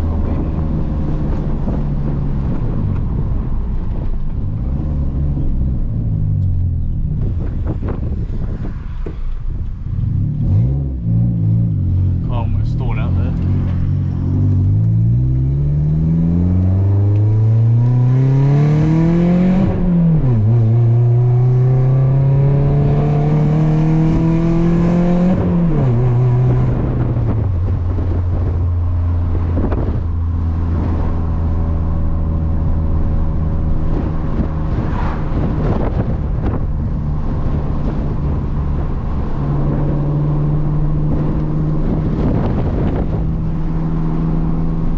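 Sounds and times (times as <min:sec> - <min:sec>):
car engine revving through gears: 0:10.0 - 0:44.9.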